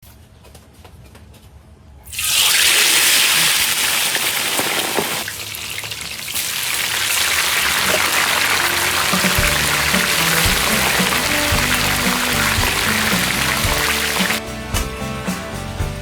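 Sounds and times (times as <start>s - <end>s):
food sizzling in hot oil: 2.1s - 14.5s.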